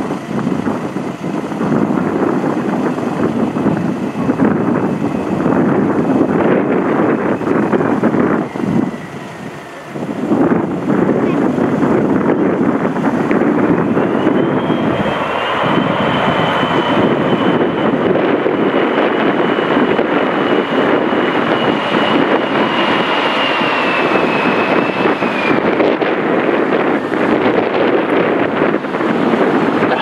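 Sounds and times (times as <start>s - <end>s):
jet engines rumbling and whining: 0.0s - 30.0s.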